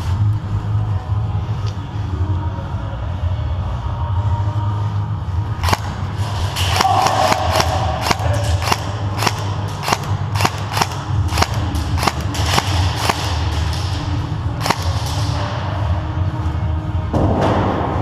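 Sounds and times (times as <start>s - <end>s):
airsoft gun shots: 5.6s - 13.8s, 14.6s - 15.3s.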